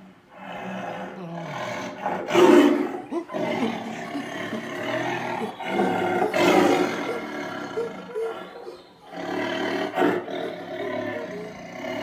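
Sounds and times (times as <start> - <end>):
tiger roaring: 0.3 - 12.0.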